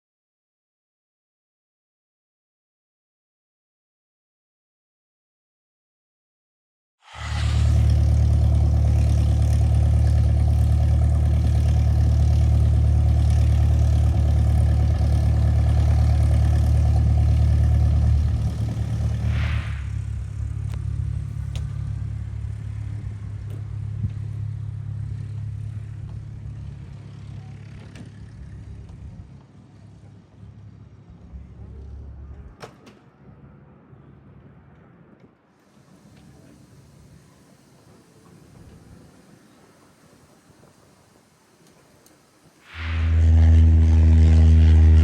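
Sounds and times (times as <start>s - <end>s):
airplane piston engine: 7.1s - 21.9s.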